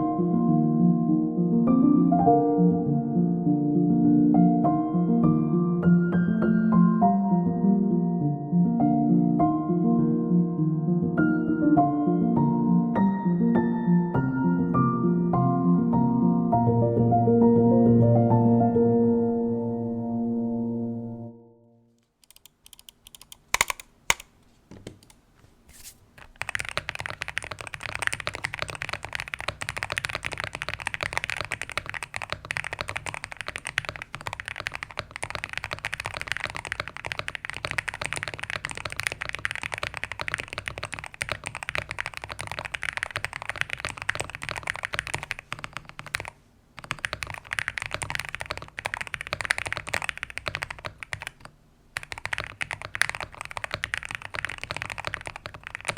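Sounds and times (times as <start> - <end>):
mechanical keyboard typing: 22.2 - 25.2, 26.2 - 55.9.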